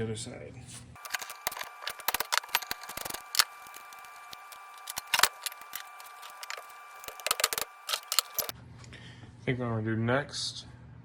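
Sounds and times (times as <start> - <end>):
faint steady whine: 1.0 - 8.5
hand tools clicking on metal: 1.0 - 8.5.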